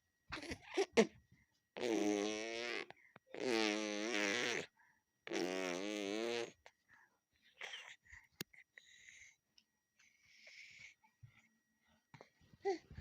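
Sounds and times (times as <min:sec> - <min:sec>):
baby buzzing lips: 0:01.8 - 0:06.6.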